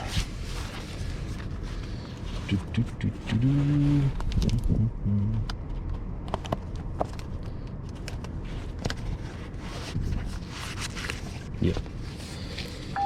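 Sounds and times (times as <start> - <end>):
steady low hum: 0.0 - 13.0
person humming: 2.8 - 5.4.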